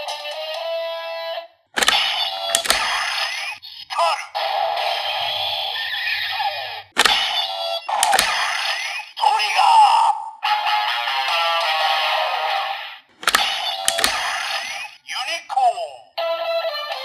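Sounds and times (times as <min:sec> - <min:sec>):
sharp plastic clicks: 0:01.8 - 0:03.4, 0:07.0 - 0:08.8, 0:13.2 - 0:14.7.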